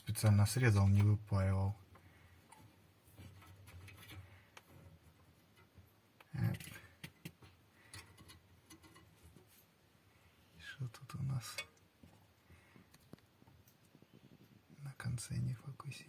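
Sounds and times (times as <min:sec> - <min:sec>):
faint handling clicks and rubbing: 0:01.8 - 0:09.8.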